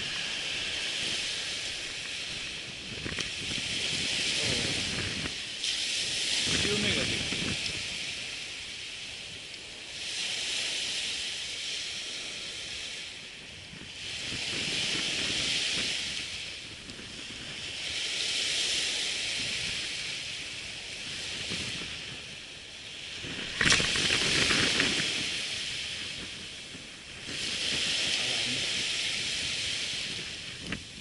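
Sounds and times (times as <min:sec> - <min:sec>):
waves breaking on sandy beach: 0:00.0 - 0:31.0.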